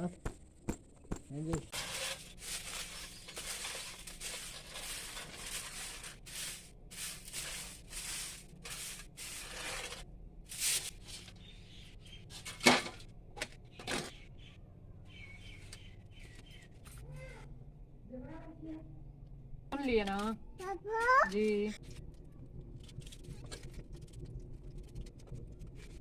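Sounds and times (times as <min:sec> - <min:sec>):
scraping strokes: 0:01.7 - 0:11.4.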